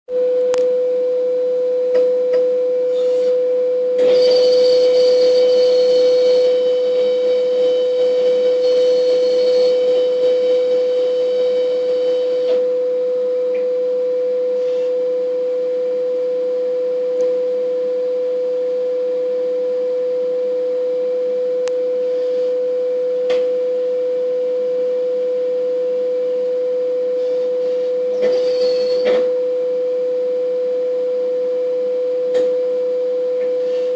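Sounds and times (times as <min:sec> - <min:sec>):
mechanical noise with faint whines: 0:00.1 - 0:33.9
machine running with high-pitched tone: 0:01.5 - 0:16.8, 0:27.0 - 0:30.2.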